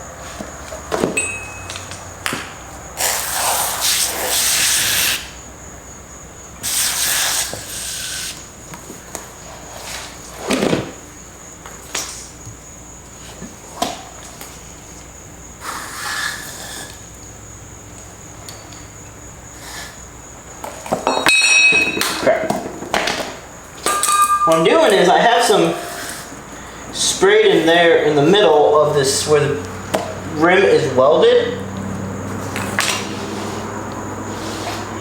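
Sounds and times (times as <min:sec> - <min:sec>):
crickets chirping: 0:00.0 - 0:35.0
hissing spray bursts: 0:03.0 - 0:05.4, 0:06.6 - 0:08.4, 0:15.6 - 0:17.0.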